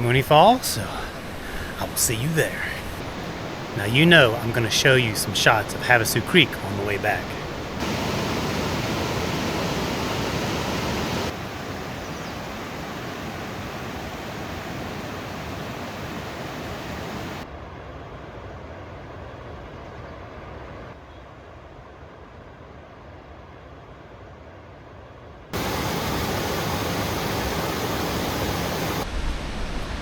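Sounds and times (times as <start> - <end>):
water rushing over cascades: 0.4 - 17.4, 25.6 - 29.4.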